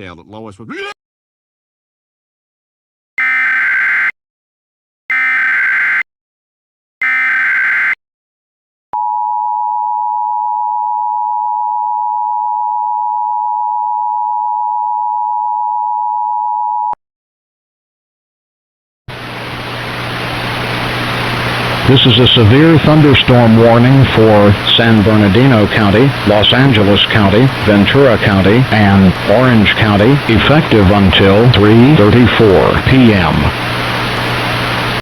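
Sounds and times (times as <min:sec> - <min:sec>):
screeching data tones: 0:03.2 - 0:04.2, 0:05.1 - 0:06.1, 0:07.0 - 0:08.0
two-tone attention signal: 0:03.2 - 0:04.2, 0:05.1 - 0:06.0, 0:07.0 - 0:08.0.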